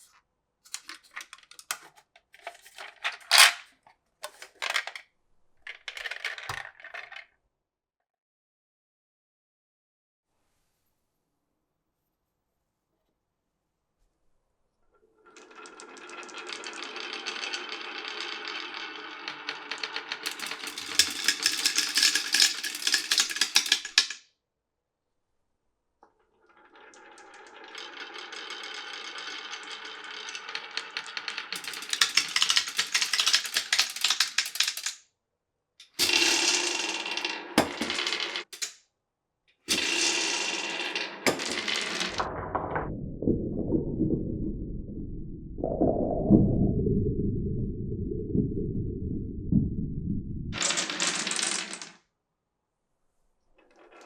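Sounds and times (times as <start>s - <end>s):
marbles rolling down wooden run: 4.2s - 5.0s, 5.6s - 7.3s, 15.2s - 24.2s, 26.4s - 35.0s, 35.8s - 38.8s, 39.7s - 42.9s, 50.5s - 52.0s, 53.6s - 54.0s.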